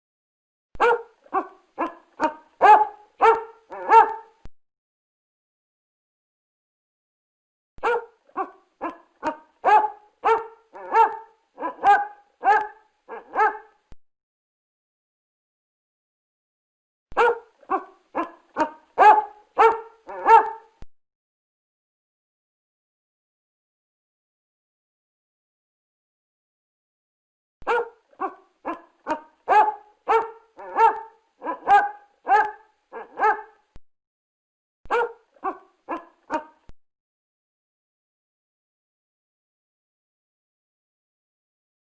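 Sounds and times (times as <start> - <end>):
dog barking: 0.8 - 4.4, 7.8 - 13.8, 17.2 - 20.8, 27.6 - 33.6, 34.9 - 36.7.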